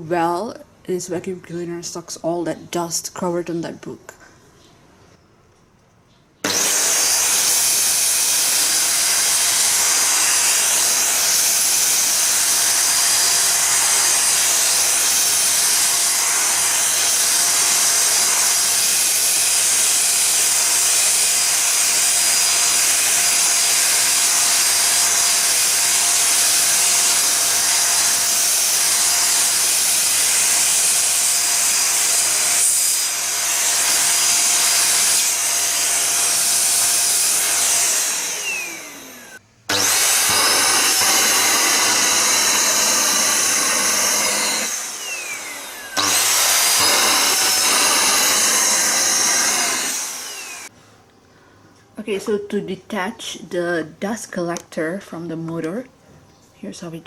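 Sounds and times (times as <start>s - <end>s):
stick vacuum cleaner running: 6.4s - 50.7s.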